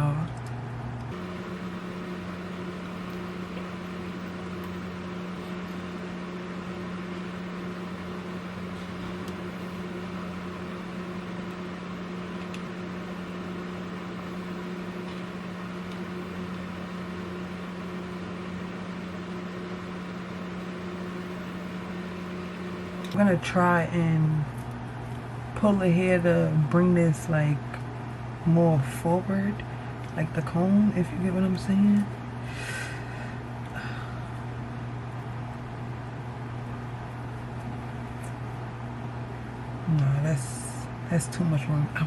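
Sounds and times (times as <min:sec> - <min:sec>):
small electric motor humming: 0:01.1 - 0:23.1.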